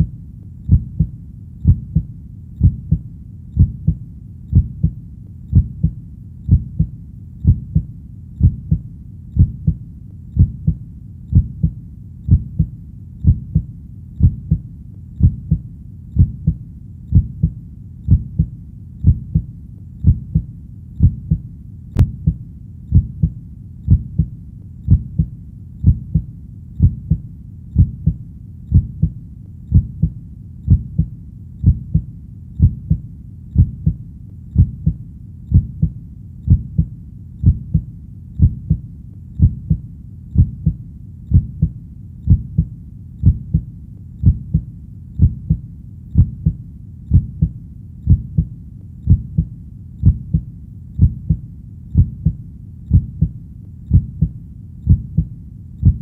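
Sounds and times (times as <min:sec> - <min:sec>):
faint low rumble: 0:00.0 - 0:56.0
heartbeat double thumps: 0:00.7 - 0:09.8, 0:10.4 - 0:33.0, 0:33.6 - 0:39.8, 0:40.4 - 0:51.4, 0:52.0 - 0:56.0.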